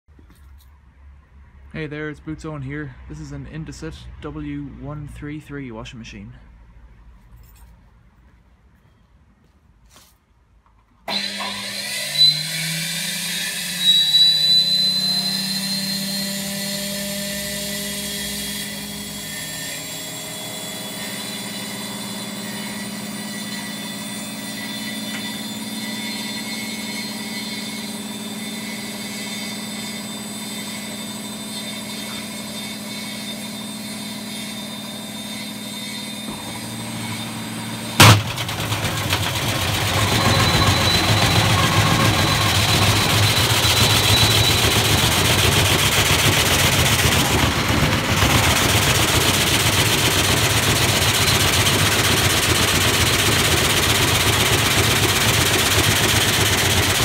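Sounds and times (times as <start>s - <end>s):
washing machine running: 20.9s - 57.0s
sharp bang: 36.2s - 43.1s.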